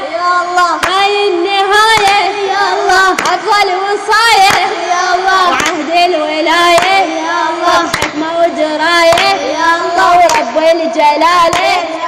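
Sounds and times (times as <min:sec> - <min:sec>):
young female voice singing: 0:00.0 - 0:12.0
sharp percussive hits: 0:07.8 - 0:08.2.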